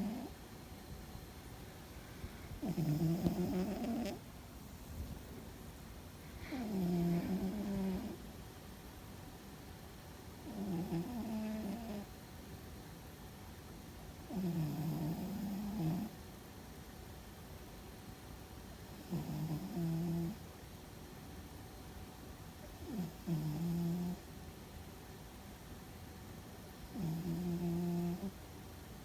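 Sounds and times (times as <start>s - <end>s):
cat snoring: 0.0s - 0.4s, 2.6s - 4.2s, 6.4s - 8.2s, 10.4s - 12.1s, 14.3s - 16.1s, 19.0s - 20.4s, 22.8s - 24.2s, 26.9s - 28.4s.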